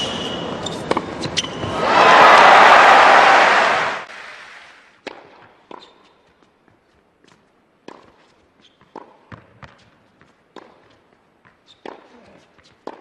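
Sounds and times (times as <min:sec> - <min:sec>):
crowd cheering: 0:01.7 - 0:04.8
tennis ball bounces: 0:05.0 - 0:06.1, 0:07.8 - 0:13.0.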